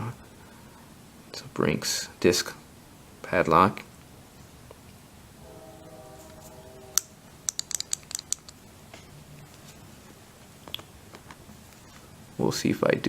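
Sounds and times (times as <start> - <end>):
faint hum: 0.0 - 13.0
metallic padlock clicks: 7.5 - 8.6.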